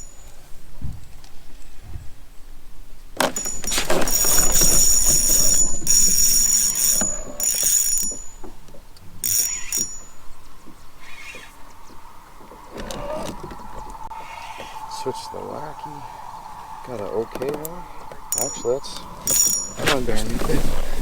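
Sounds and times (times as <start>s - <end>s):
fishing reel cranking: 3.2s - 8.5s, 9.2s - 10.2s, 17.4s - 19.8s.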